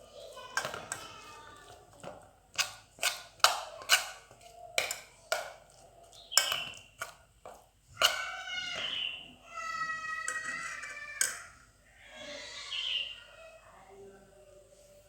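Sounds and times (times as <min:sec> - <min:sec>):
utensil clinking against container: 0:00.5 - 0:08.4, 0:10.2 - 0:11.5.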